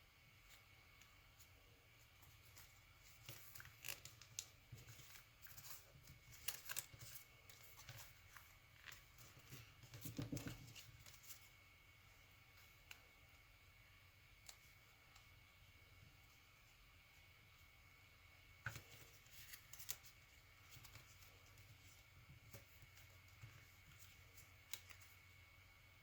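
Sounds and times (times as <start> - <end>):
paper rustling and creasing: 1.4 - 11.6, 18.6 - 25.2.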